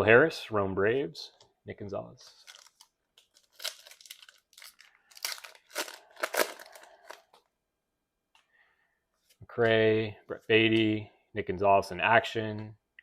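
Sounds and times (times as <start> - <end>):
wrapper and cards rustling: 2.2 - 7.5.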